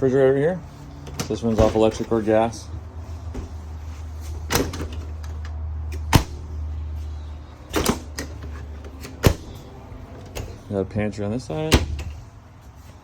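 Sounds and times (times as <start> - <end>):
doors and latches clicking: 7.7 - 10.6.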